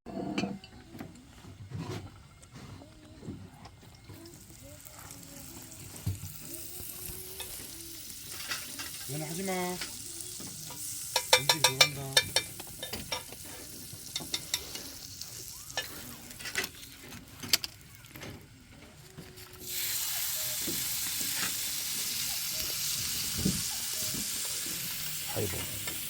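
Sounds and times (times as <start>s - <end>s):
food sizzling in a pan: 4.1s - 18.2s, 19.0s - 26.0s
utensils tapping a pan: 8.2s - 15.0s.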